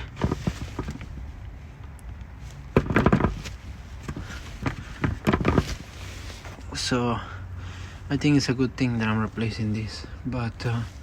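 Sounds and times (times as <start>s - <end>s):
knocks and clatters: 0.0s - 1.2s, 2.7s - 5.9s
low steady rumble: 0.0s - 11.0s.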